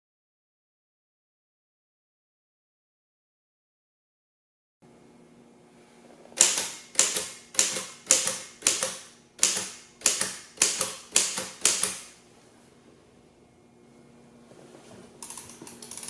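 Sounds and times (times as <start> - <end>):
typewriter keystrokes clacking: 6.4 - 12.1.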